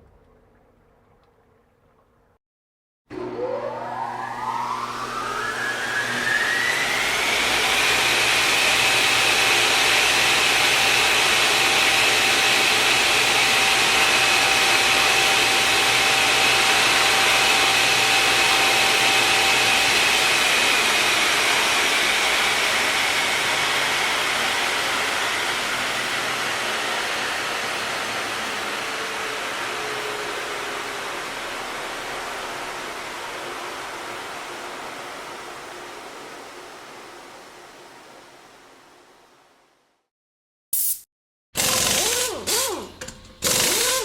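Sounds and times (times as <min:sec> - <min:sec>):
jet engine roaring with whine: 0:03.1 - 0:37.7.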